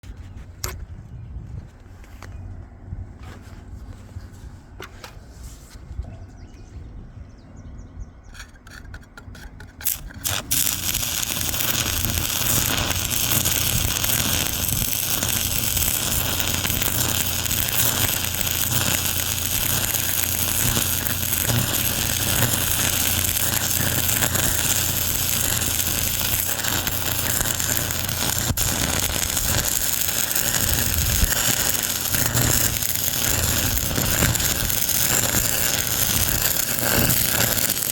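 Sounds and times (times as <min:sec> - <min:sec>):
welding arc crackling and hissing: 0:09.8 - 0:37.9.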